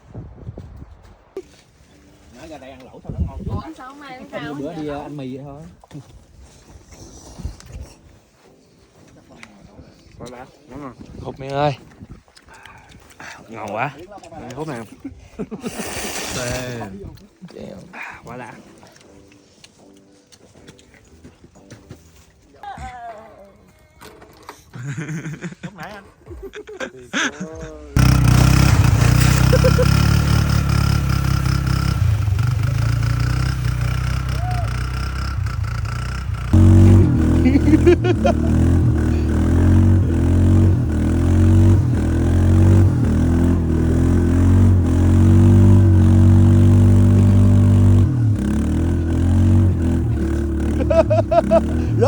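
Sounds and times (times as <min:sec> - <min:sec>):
vehicle engine running: 0:28.0 - 0:52.0.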